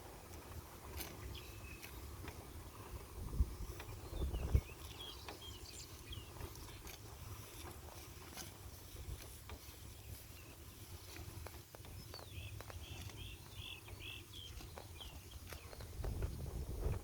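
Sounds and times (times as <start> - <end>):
cattle tearing grass: 0.0 - 3.1, 4.7 - 16.3
wind buffeting microphone: 0.8 - 6.8, 13.6 - 17.0.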